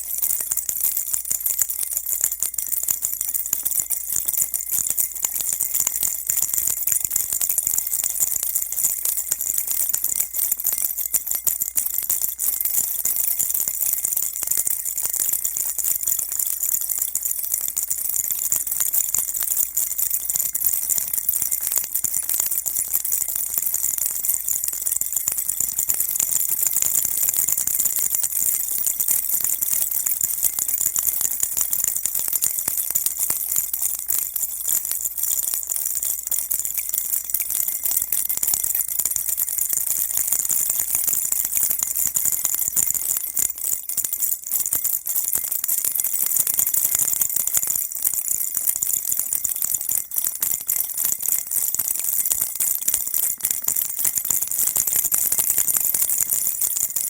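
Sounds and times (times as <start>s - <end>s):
baby rattle shaken: 0.0s - 43.1s.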